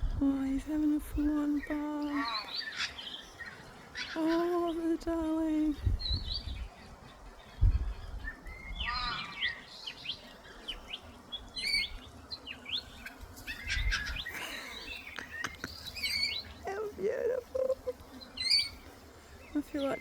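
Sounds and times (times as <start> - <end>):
faint steady hiss: 0.0 - 20.0
small birds chirping: 0.0 - 20.0
dull low thumps: 5.8 - 6.7.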